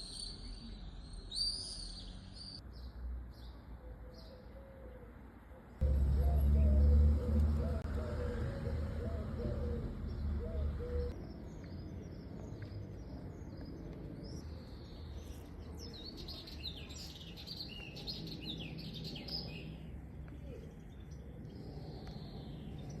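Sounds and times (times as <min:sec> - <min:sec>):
small birds chirping: 0:05.7 - 0:23.0.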